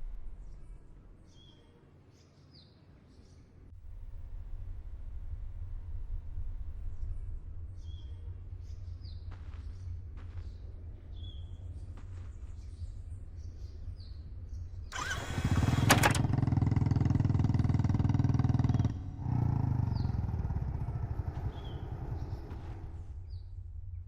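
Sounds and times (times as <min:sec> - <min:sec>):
faint bird chirps: 0:00.0 - 0:03.6, 0:18.0 - 0:23.6
engine running: 0:14.9 - 0:23.4.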